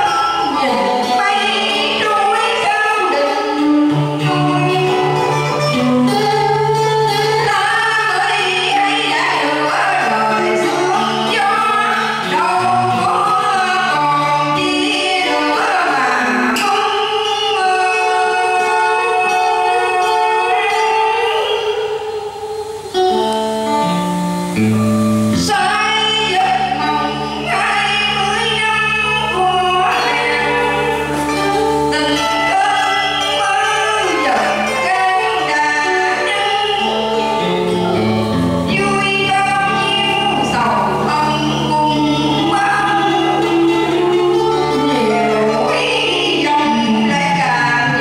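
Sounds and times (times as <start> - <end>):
band playing: 0.0 - 48.0
voices singing a song: 6.1 - 23.4
low bass notes: 23.2 - 27.4.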